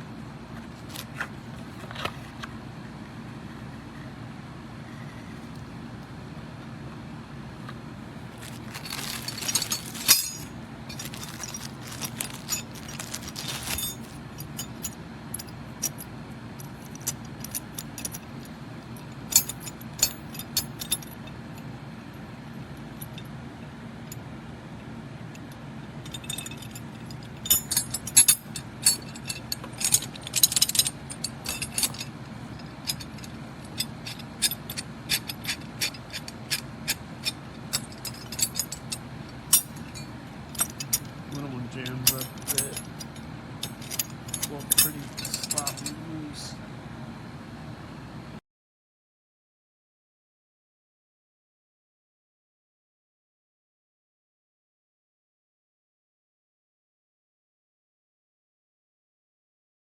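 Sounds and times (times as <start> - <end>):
steel wrenches clinking: 8.3 - 16.0, 16.6 - 21.3, 26.0 - 46.1.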